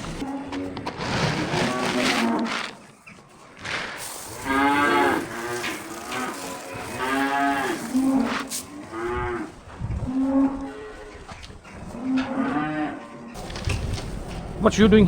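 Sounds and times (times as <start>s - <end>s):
cattle mooing: 3.7s - 11.2s.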